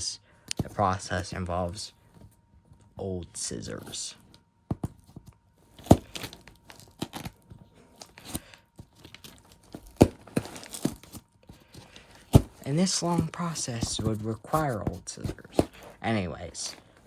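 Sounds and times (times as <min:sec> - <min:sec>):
wrapping crinkling and tearing: 0:05.7 - 0:16.0.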